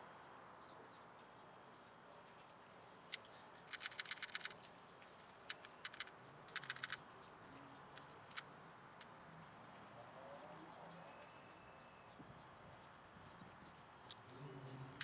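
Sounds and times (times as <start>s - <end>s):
hand tool clicking: 5.5s - 7.0s.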